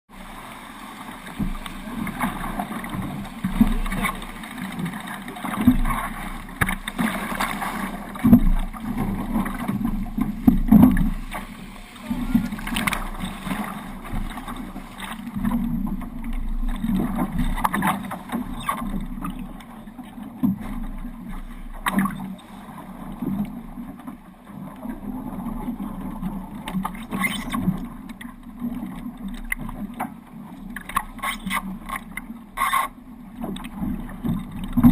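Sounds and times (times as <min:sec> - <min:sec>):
water splashing against hulls: 0:00.1 - 0:34.9.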